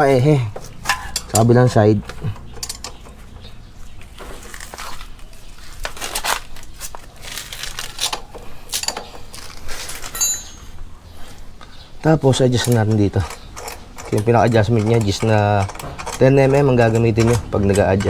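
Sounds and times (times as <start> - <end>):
metal tools clinking and scraping: 0.0 - 18.0
short metallic ring: 10.1 - 10.8.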